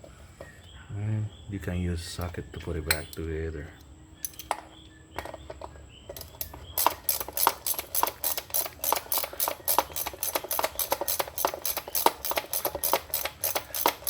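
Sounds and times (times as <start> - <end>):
socket ratchet clicking: 4.2 - 4.6, 6.1 - 14.0.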